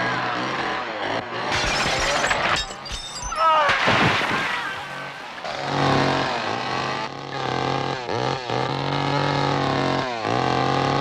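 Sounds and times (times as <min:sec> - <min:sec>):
two-stroke chainsaw revving: 0:00.0 - 0:01.5, 0:05.3 - 0:11.0.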